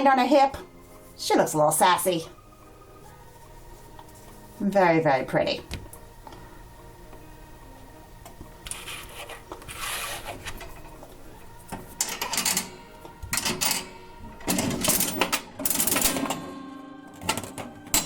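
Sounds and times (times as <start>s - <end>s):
background music: 0.0s - 18.0s
vending machine clicking and rattling: 13.4s - 18.0s.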